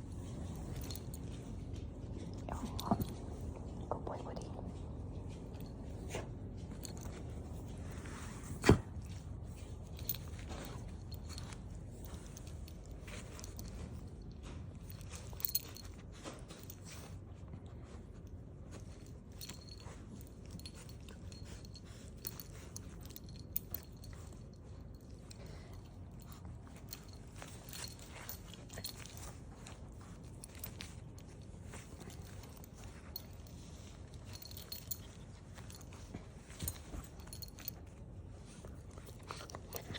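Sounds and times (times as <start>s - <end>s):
low rumble: 0.0s - 10.4s
dogs chewing and licking: 0.0s - 39.9s.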